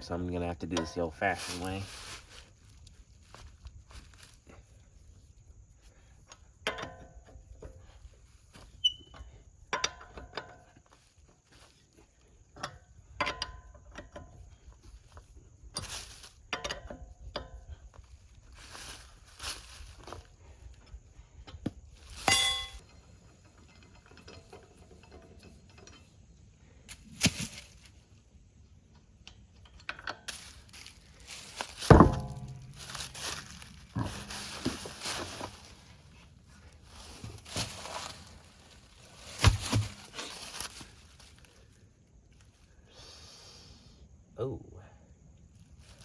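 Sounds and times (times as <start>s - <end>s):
metal tools clanking: 22.2s - 26.2s
metal scraping and rattling: 29.8s - 41.1s.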